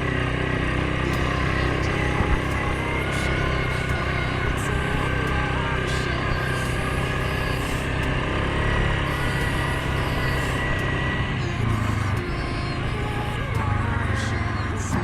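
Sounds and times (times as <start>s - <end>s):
atv engine running: 0.0s - 15.0s
thin steady whine: 0.0s - 15.0s.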